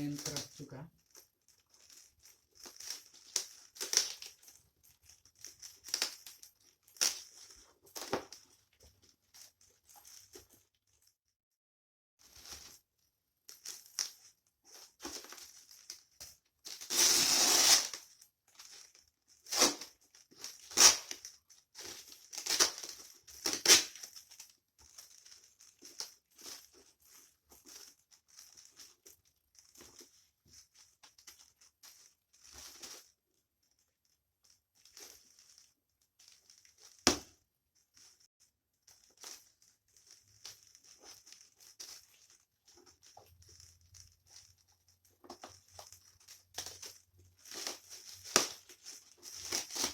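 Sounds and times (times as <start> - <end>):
packing crinkling and rustling: 45.2 - 49.9.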